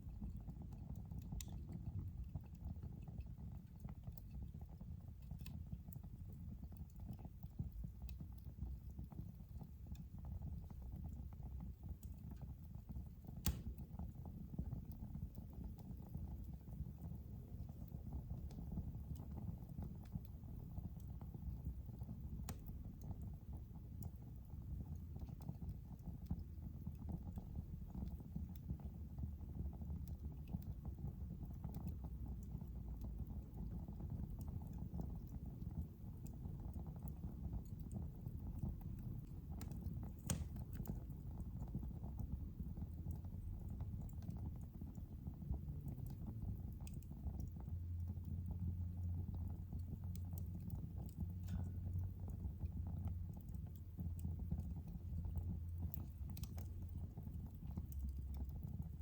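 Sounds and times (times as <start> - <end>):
fire crackling and popping: 0.0 - 59.0
wood fire rumbling: 0.0 - 59.0.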